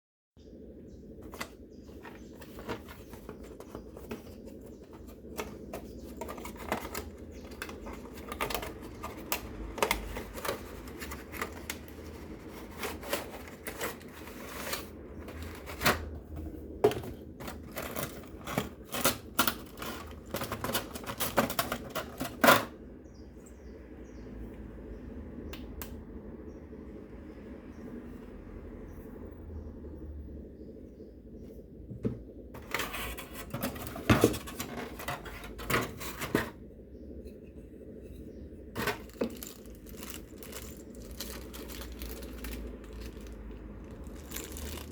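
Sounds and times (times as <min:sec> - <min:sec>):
steady low hum: 0:00.4 - 0:44.9
cardboard and plastic packaging rustling: 0:01.2 - 0:22.7, 0:31.9 - 0:36.6, 0:38.7 - 0:44.9.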